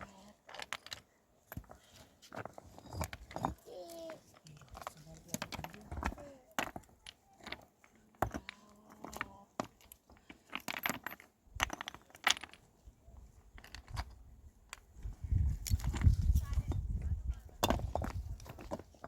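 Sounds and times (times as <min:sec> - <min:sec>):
hard objects clicking and knocking: 0:00.0 - 0:12.7, 0:13.4 - 0:19.0.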